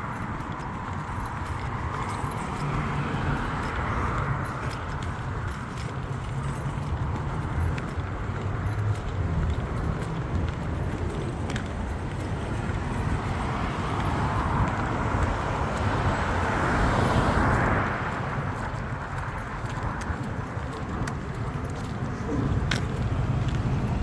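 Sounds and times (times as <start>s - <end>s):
cars passing on street: 0.0s - 24.0s.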